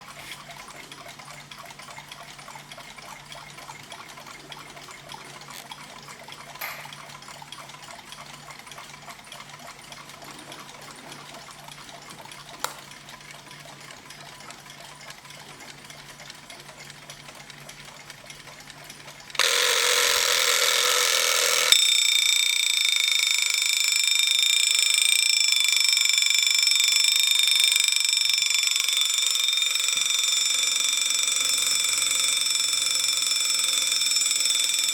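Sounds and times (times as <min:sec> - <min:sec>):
small clicks: 0:19.4 - 0:25.7
alarm clock ringing: 0:19.4 - 0:34.9.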